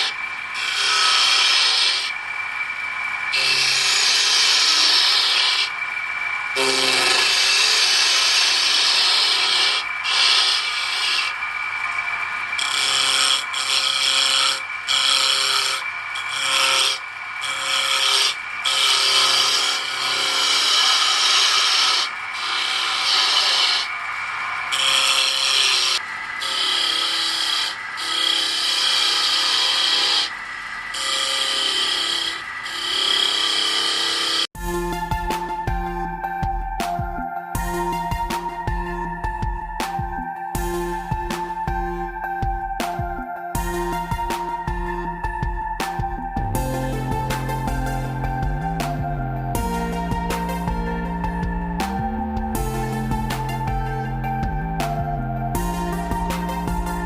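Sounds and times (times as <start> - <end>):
cutter rasping on wood: 0.0 - 2.2, 3.4 - 5.8, 6.6 - 11.4, 12.5 - 23.9, 24.7 - 30.4, 31.0 - 34.5
woodworking machine motor whine: 0.0 - 57.0.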